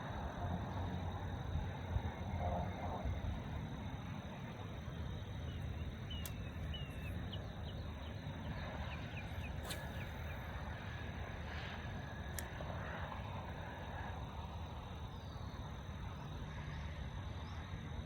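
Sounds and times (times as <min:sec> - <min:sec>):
steady low rumble: 0:00.0 - 0:16.4
faint short chirping calls: 0:05.3 - 0:10.8
sharp clicks: 0:06.1 - 0:06.8.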